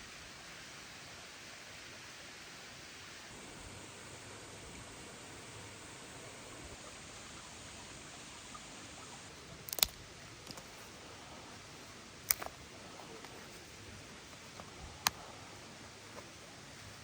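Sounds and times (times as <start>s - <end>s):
steady low hiss: 0.0s - 17.0s
faint ticks: 8.5s - 17.0s
sharp clicks or knocks: 9.7s - 10.6s.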